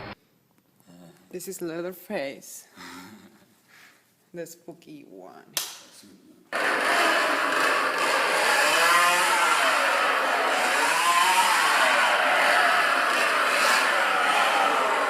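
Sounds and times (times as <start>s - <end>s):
recorded chainsaw sound through speakers: 6.5s - 15.0s.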